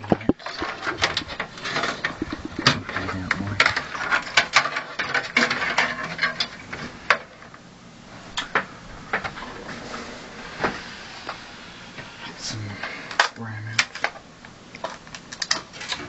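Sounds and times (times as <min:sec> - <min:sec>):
hands rustling and crackling: 0:00.0 - 0:05.8
sharp clicks and taps: 0:02.0 - 0:03.8.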